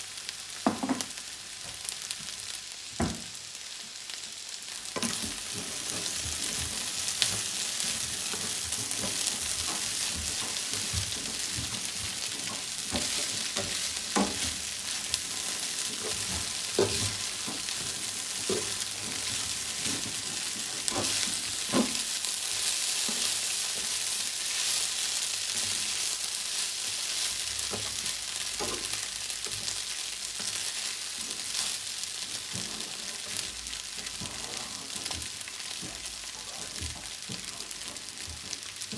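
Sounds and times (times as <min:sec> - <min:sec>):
food sizzling in a hot pan: 0:00.0 - 0:38.9
utensil knocking and scraping pan: 0:05.0 - 0:24.0, 0:32.3 - 0:36.0.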